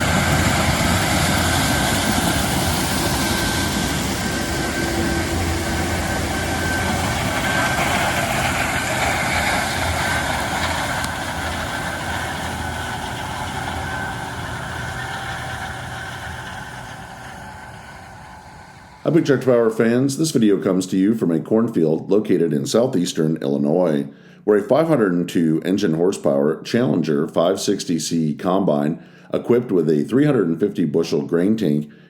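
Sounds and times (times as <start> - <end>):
combine harvester engine drone: 0.0 - 19.2
thin steady whine: 0.0 - 19.9.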